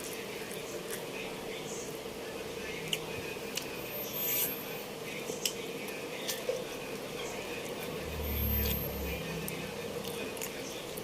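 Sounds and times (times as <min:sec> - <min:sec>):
steady low hum: 0:00.0 - 0:11.0
low rumble: 0:07.8 - 0:10.2
chewing and mouth noises: 0:09.4 - 0:11.0.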